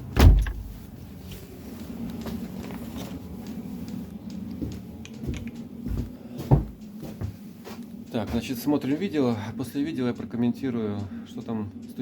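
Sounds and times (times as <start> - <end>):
steady low hum: 0.0 - 12.0
door shutting: 0.1 - 0.7.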